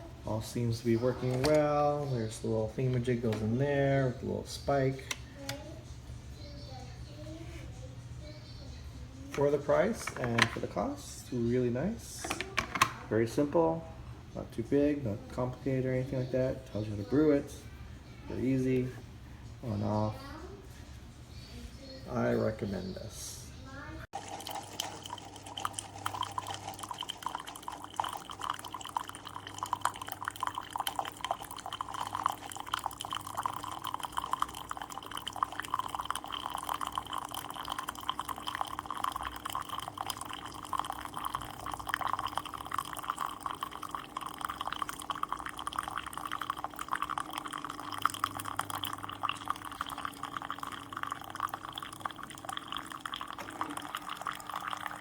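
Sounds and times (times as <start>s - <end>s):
coffee machine humming: 0.0s - 55.0s
hot liquid streaming into a cup: 24.2s - 55.0s.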